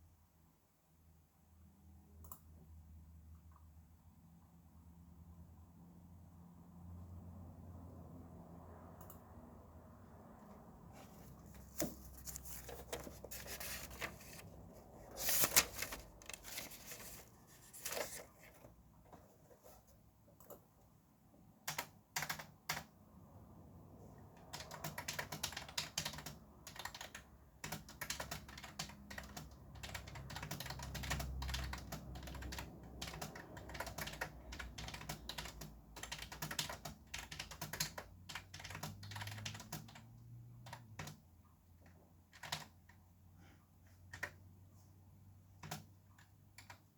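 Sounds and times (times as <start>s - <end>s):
keyboard clatter: 11.3s - 18.7s
typing on keyboard: 11.3s - 19.8s, 21.6s - 23.0s, 24.4s - 41.2s, 41.8s - 43.0s, 44.1s - 44.4s, 45.6s - 46.9s.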